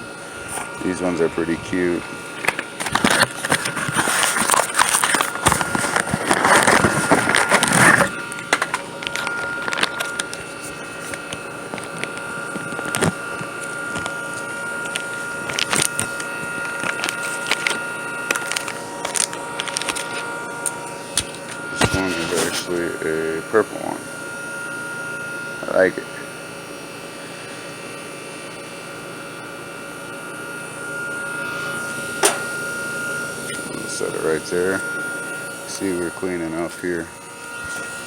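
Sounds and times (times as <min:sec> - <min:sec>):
air conditioner unit whining: 0:00.0 - 0:38.0
rustling handling noise: 0:00.2 - 0:13.6, 0:14.8 - 0:22.8.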